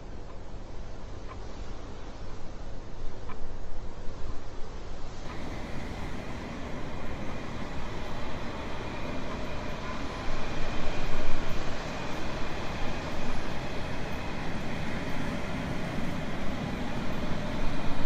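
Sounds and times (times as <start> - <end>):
train rumbling on rails: 0.0 - 18.0.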